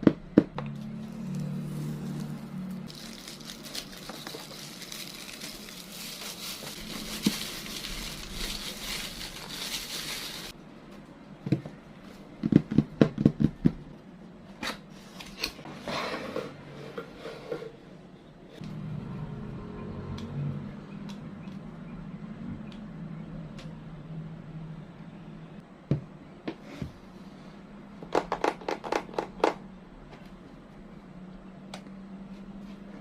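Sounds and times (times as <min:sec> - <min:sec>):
plastic packaging crinkling: 0:02.2 - 0:10.6.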